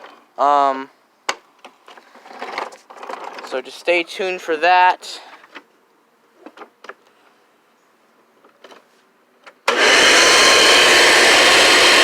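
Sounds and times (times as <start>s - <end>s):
vacuum cleaner motor running: 9.7s - 12.0s.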